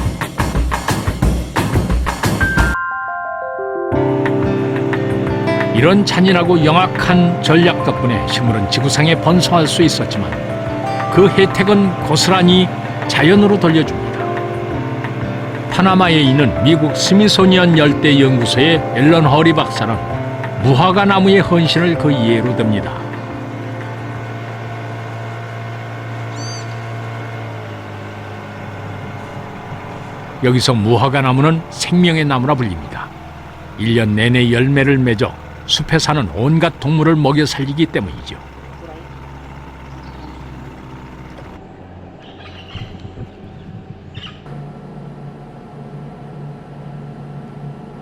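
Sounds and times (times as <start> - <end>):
steady low drone: 3.6 - 48.0
high arching bird call: 26.3 - 26.9, 42.2 - 44.5.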